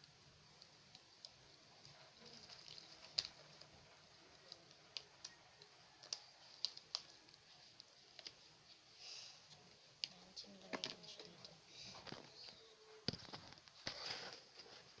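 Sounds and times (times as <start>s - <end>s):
small objects clicking and tapping: 0.0s - 14.6s.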